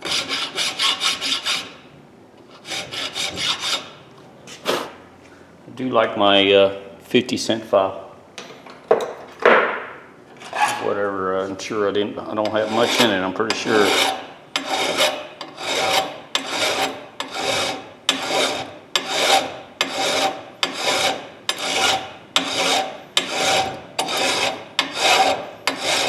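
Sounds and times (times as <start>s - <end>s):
hand file rasping on steel: 0.0s - 1.8s, 2.5s - 4.0s, 12.4s - 26.0s.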